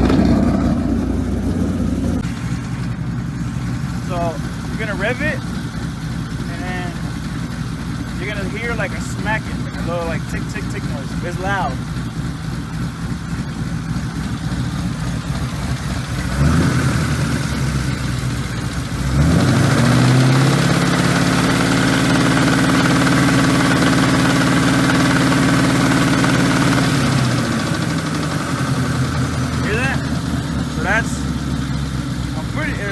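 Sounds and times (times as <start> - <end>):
car engine idling and revving: 0.0 - 32.9
engine ticking knock: 0.0 - 32.9.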